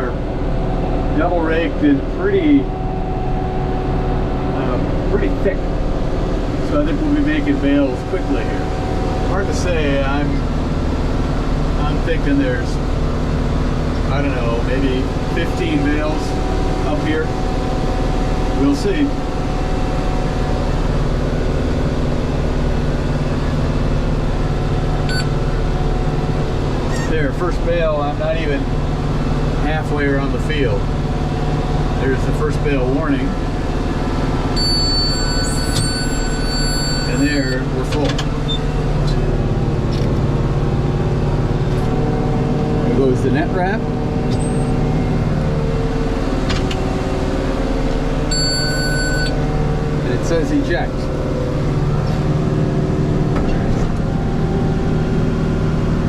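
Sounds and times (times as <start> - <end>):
tractor engine running: 0.0 - 56.0
high beep: 25.1 - 25.3, 34.6 - 37.7, 48.3 - 49.4.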